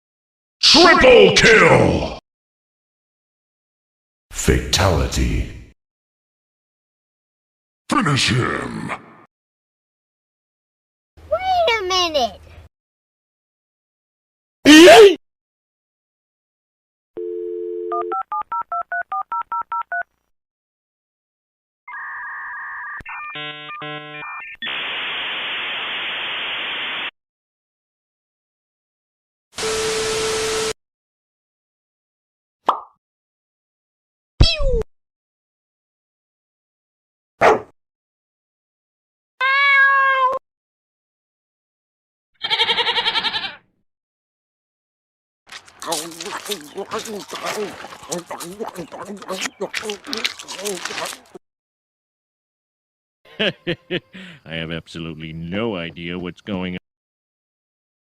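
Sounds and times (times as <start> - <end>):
dial tone: 17.2 - 20.0
modem hiss: 24.6 - 27.1
pitched animal-like call: 42.4 - 43.6, 45.8 - 51.4.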